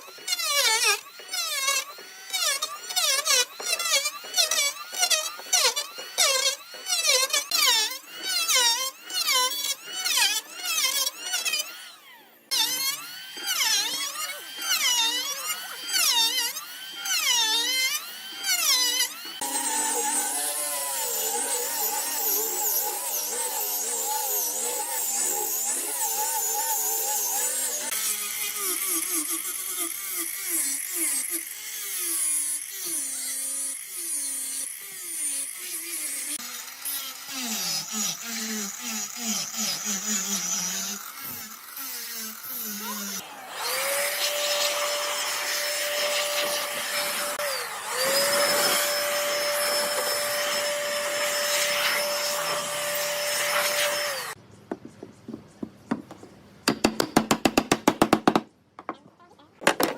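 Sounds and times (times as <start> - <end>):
power tool working wood: 0.0 - 54.4.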